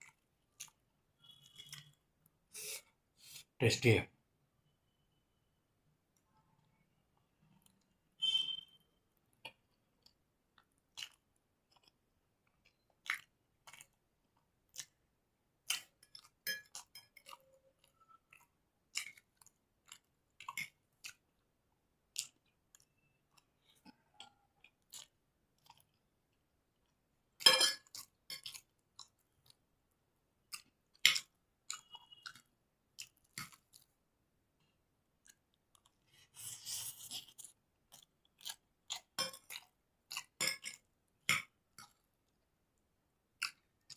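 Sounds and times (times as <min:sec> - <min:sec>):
wet chewing mouth clicks: 0:09.4 - 0:14.0.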